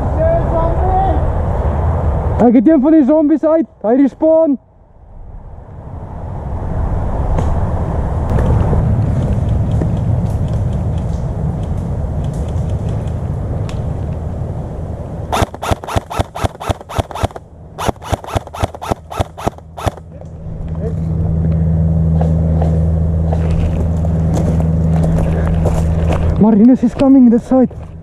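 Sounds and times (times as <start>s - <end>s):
rustling rumble on microphone: 5.6s - 15.5s, 19.5s - 28.0s
fast run of sharp clicks: 9.1s - 13.2s, 15.3s - 20.0s.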